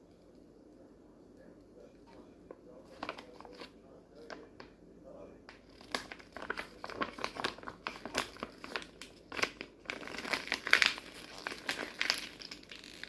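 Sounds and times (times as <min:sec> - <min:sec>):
packaging crinkling: 0:02.8 - 0:04.6, 0:05.5 - 0:13.0.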